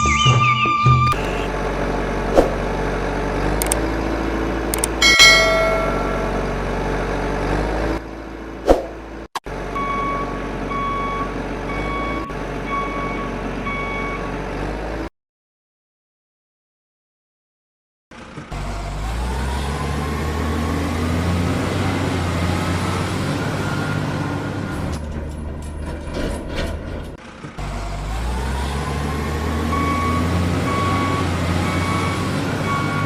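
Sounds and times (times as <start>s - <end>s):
brief sharp tone: 0.0s - 1.5s
reversing alarm beeping: 0.0s - 1.5s, 9.8s - 14.3s, 29.6s - 33.0s
heavy vehicle engine running: 0.0s - 15.1s, 18.1s - 33.0s.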